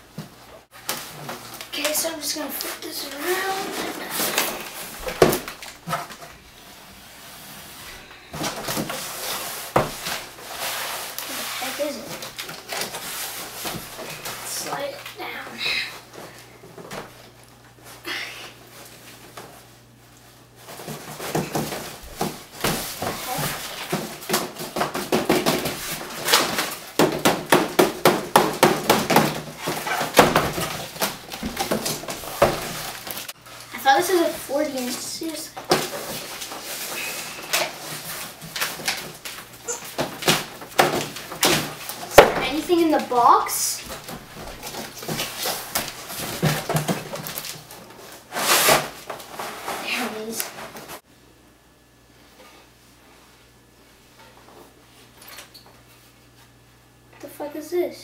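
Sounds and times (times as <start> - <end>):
cardboard rustling: 0.8 - 6.3, 8.4 - 14.9, 20.6 - 51.0
cardboard box rustling and scraping: 3.1 - 5.3.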